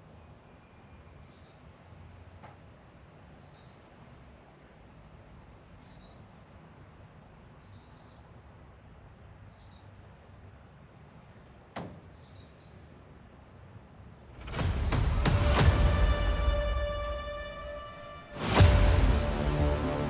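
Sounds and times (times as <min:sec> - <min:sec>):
background hiss: 0:00.0 - 0:20.0
loud burst of sound: 0:14.4 - 0:20.0.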